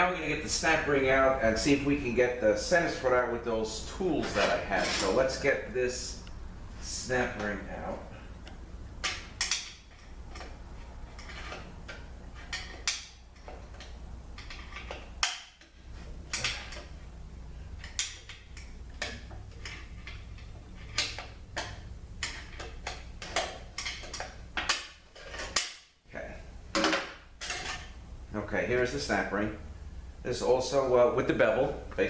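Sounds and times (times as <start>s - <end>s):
metal tools clicking and scraping: 4.2s - 5.5s, 8.4s - 17.0s, 17.8s - 25.9s, 27.4s - 27.9s.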